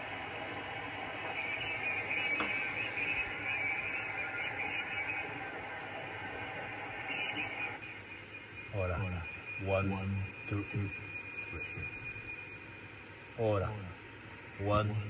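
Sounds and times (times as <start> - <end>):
faint clicks: 0.0 - 0.6, 1.3 - 8.3, 12.2 - 12.4, 13.0 - 13.4
radio static and hiss: 0.0 - 15.0.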